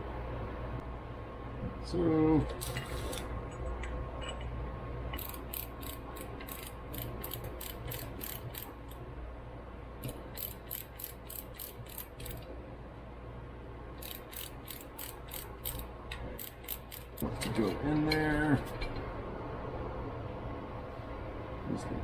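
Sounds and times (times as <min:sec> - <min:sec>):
ratchet clicking: 0:05.2 - 0:09.0, 0:10.0 - 0:12.4, 0:14.0 - 0:17.2.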